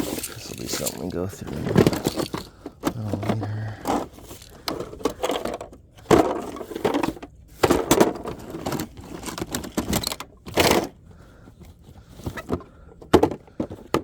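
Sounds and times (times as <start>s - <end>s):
rummaging through a box: 0.0s - 14.0s.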